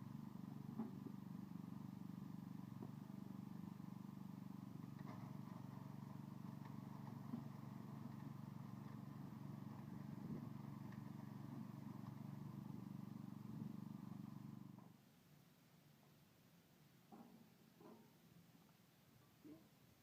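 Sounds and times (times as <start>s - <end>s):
generator engine humming: 0.0s - 14.9s.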